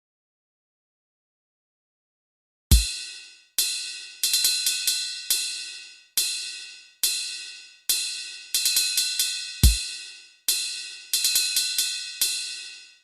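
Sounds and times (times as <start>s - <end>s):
cymbal strikes ringing out: 2.7s - 12.9s.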